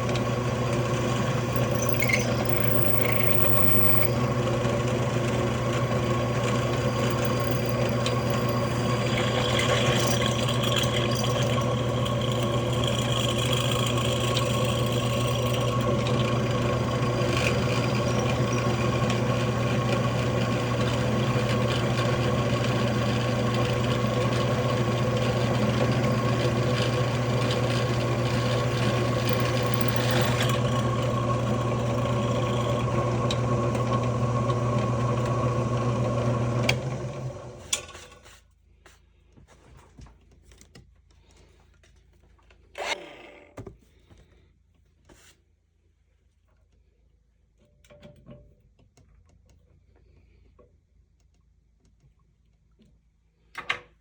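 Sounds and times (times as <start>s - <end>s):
drilling machine cutting metal: 0.0s - 37.0s.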